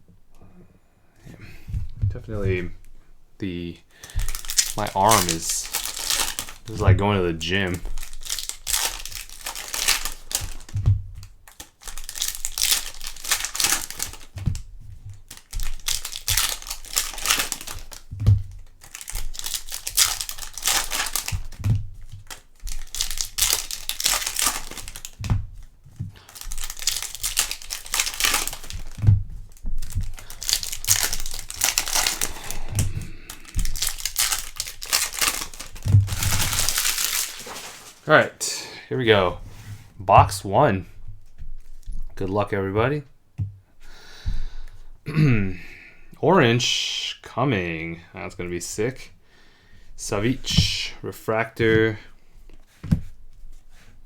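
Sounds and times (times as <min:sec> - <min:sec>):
soft thump: 0:01.6 - 0:02.5
foil wrappers tearing and crinkling: 0:04.0 - 0:38.1.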